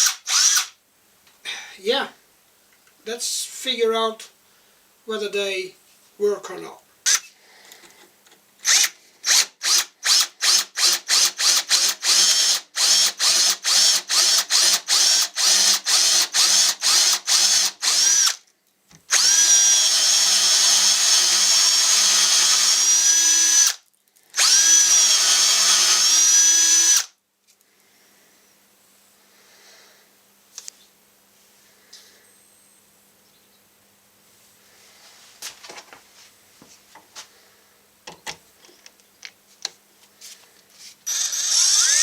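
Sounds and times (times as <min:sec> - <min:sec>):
cordless drill motor whining: 0:00.0 - 0:00.7, 0:08.6 - 0:18.4, 0:19.1 - 0:23.8, 0:24.4 - 0:27.2, 0:41.0 - 0:42.0.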